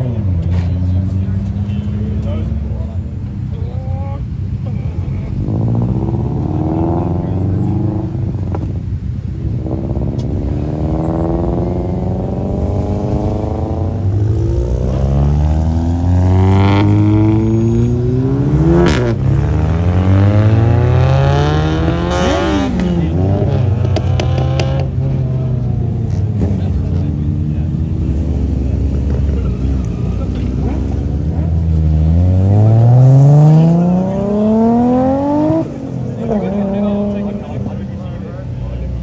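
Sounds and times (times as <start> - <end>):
car engines revving and accelerating: 0.0 - 39.0
low rumble of running cars: 0.0 - 39.0.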